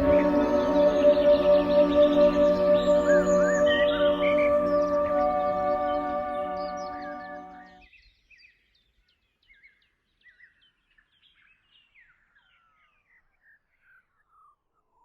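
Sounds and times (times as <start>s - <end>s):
bird chirps and trills: 0.0s - 7.7s
background music: 0.0s - 7.8s.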